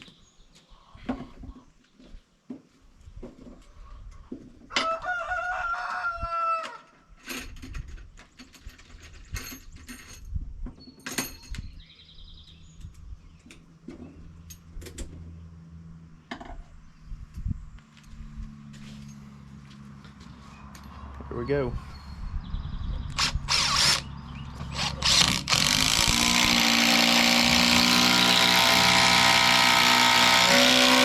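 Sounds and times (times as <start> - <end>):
rooster crowing: 4.7 - 6.9.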